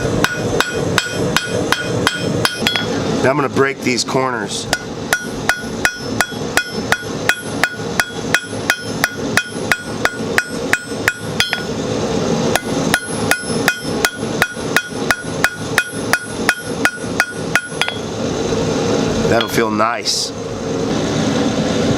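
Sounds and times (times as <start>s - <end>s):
hammer ringing on anvil: 0.0s - 3.0s, 4.7s - 11.7s, 12.6s - 18.1s.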